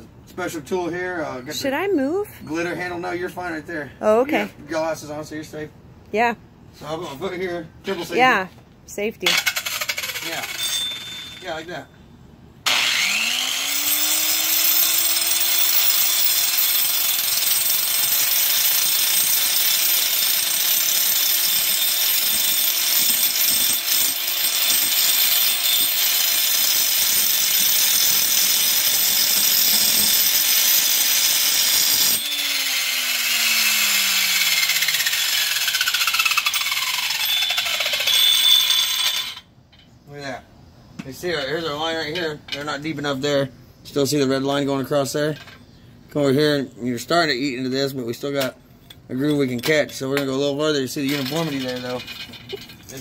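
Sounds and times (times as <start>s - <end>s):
motor winding down: 9.3s - 10.7s, 12.7s - 39.4s
grinder grinding steel: 9.3s - 11.6s, 12.7s - 39.5s, 50.9s - 53.0s.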